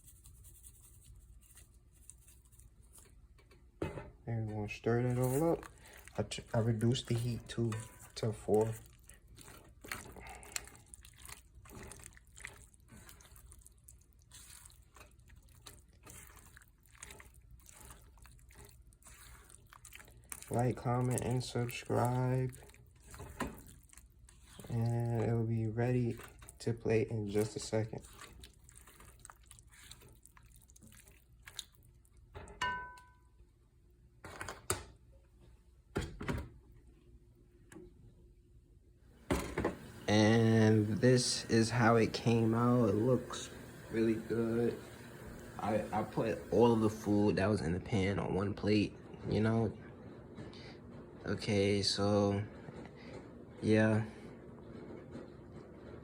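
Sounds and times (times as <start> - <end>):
wet squishing of stirred pasta: 0.0 - 3.8, 4.4 - 33.0, 39.7 - 51.2
utensil scraping pan and plate: 6.6 - 8.3.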